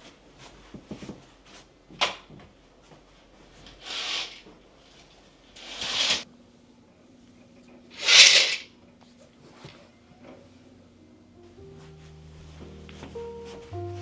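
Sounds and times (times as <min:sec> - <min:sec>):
short hissing bursts: 0:03.8 - 0:04.5, 0:08.0 - 0:08.6.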